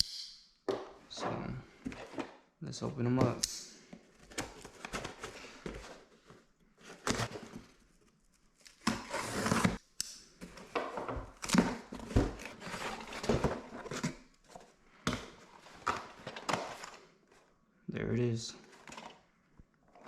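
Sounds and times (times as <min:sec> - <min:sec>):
packaging rustling and scraping: 0:04.0 - 0:09.8, 0:10.4 - 0:14.8.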